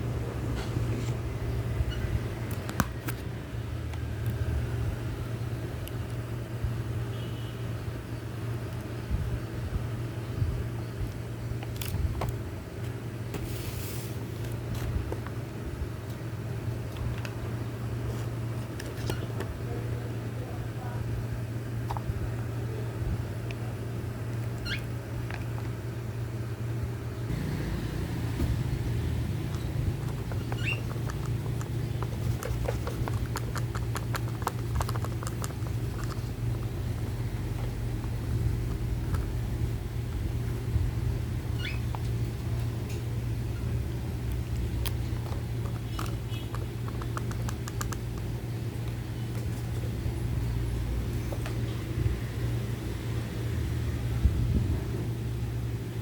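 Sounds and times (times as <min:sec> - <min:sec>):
steady low hum: 0:00.0 - 0:56.0
young birds thin calls: 0:29.4 - 0:32.2.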